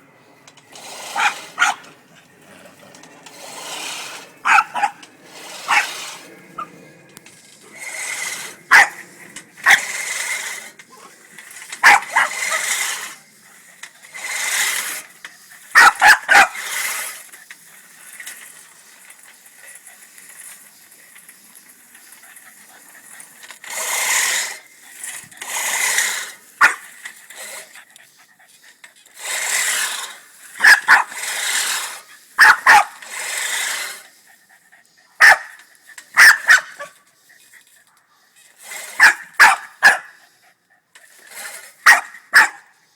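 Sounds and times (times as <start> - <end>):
push lawnmower blades whirring: 0.0 - 40.3, 40.9 - 42.7
dog barking: 1.2 - 1.9, 4.4 - 5.0, 5.7 - 5.9, 8.7 - 9.0, 11.8 - 12.4, 15.8 - 16.6, 26.6 - 26.8, 30.6 - 31.2, 32.4 - 33.0, 35.2 - 35.6, 36.2 - 36.9, 39.0 - 40.2, 41.8 - 42.7.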